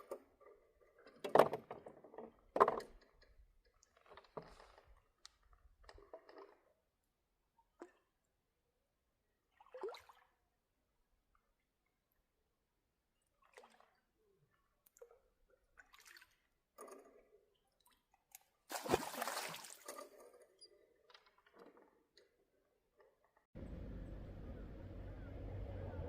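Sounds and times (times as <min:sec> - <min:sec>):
water splashing and dripping: 0:18.7 - 0:20.2
steady low hum: 0:23.6 - 0:26.0.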